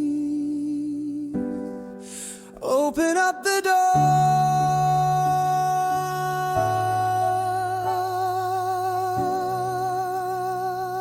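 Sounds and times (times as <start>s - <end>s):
person singing long note: 3.7s - 11.0s.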